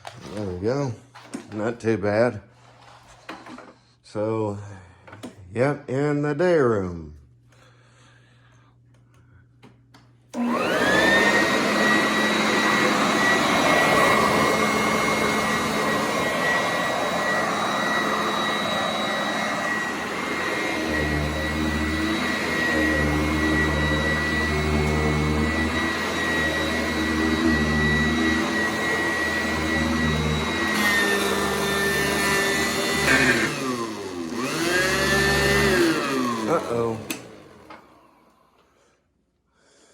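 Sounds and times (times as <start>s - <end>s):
vacuum cleaner motor whine: 10.3s - 38.7s.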